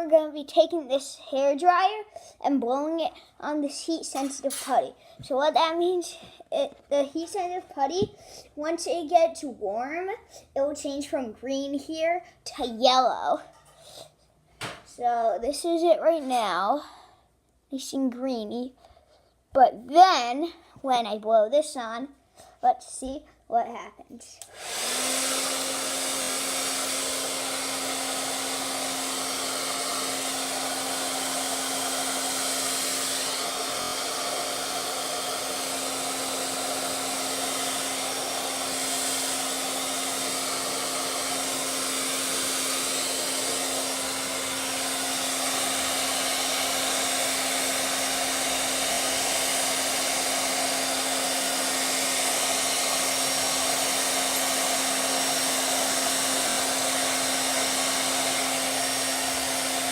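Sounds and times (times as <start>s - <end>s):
hair dryer running: 24.4s - 59.9s.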